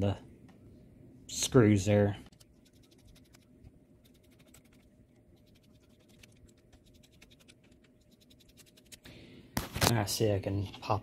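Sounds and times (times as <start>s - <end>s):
screwdriver ticking and scratching: 2.3s - 3.4s, 4.0s - 9.0s.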